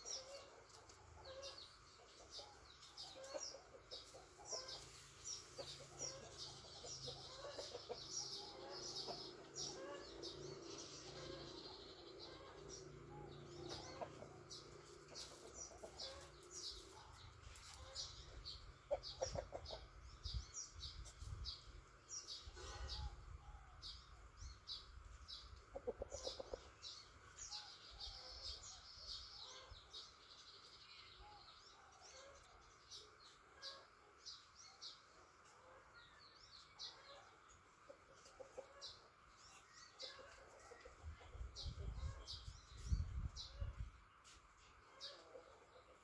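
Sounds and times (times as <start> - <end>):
chickens clucking: 0.0 - 20.4, 24.9 - 28.7, 36.7 - 43.9, 44.7 - 46.0.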